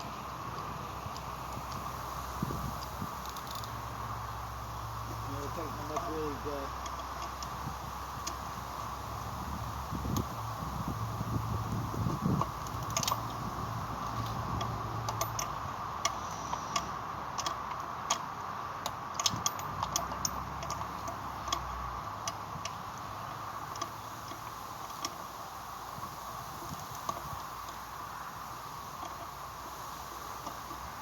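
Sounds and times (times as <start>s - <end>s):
hand wrench metallic clicks: 2.8s - 3.8s, 12.4s - 25.3s.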